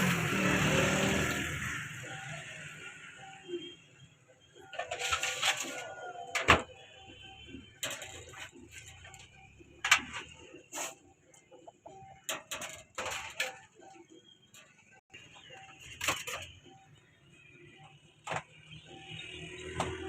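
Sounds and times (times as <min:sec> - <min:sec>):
chickens clucking: 0:10.3 - 0:12.2.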